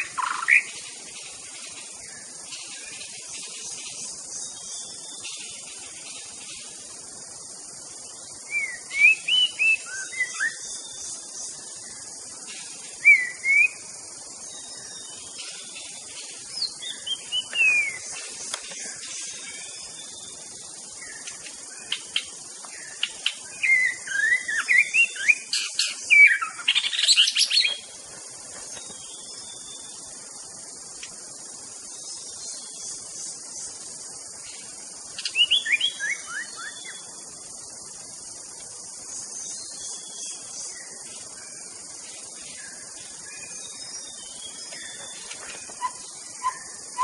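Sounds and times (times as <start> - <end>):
bird singing whistled phrases: 8.5 - 10.6, 13.0 - 13.8, 16.6 - 18.0, 23.6 - 27.8, 35.2 - 37.0, 45.8 - 47.0.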